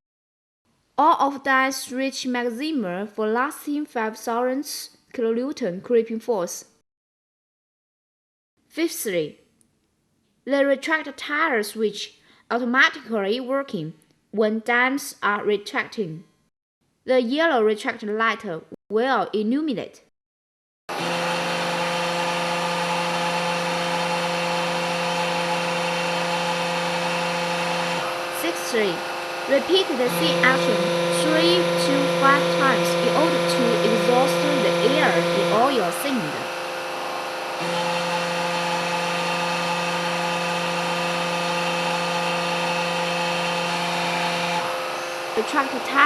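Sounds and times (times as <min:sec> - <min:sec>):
hydraulic pump motor humming: 0:20.9 - 0:46.0.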